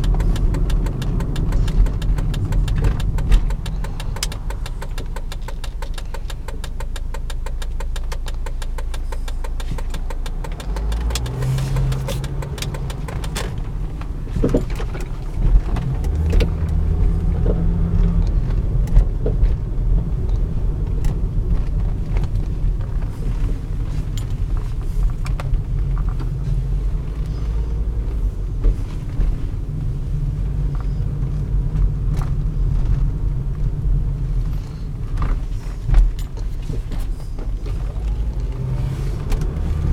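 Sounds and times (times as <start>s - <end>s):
fast even ticking: 0.0s - 13.6s
car engine and road rumble: 0.0s - 39.9s.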